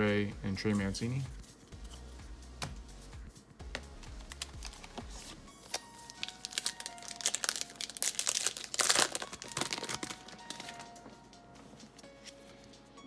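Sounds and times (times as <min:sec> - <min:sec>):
card pack wrapper tearing and crinkling: 0:04.2 - 0:11.0.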